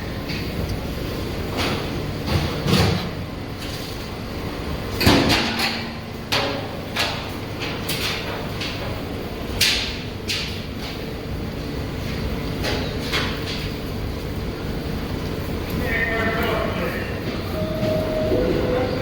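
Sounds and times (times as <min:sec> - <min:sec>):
steady low train rumble: 0:00.0 - 0:19.0
sharp metallic clanks and knocks: 0:05.0 - 0:08.8.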